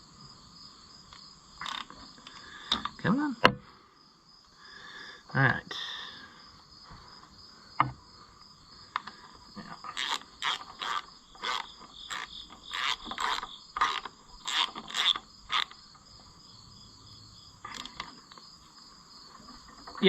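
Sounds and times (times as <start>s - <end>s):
ratchet wrench rasping: 9.9s - 15.7s.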